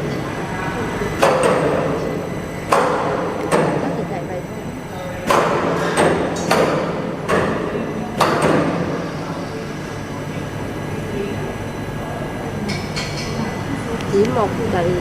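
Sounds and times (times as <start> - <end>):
machine hum with high whine: 0.0 - 15.0
sharp hammer-like knocks: 5.2 - 8.8.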